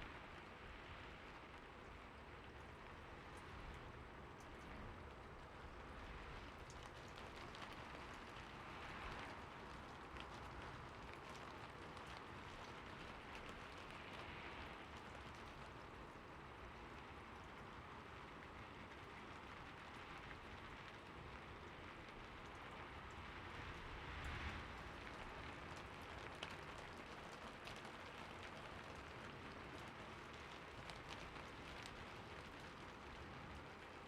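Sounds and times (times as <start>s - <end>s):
quiet rain falling: 0.0s - 34.0s
raindrops ticking: 1.4s - 34.0s.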